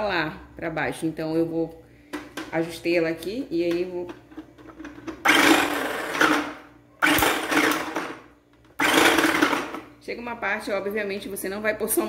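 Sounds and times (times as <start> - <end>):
food processor motor pulsing: 5.2 - 9.9.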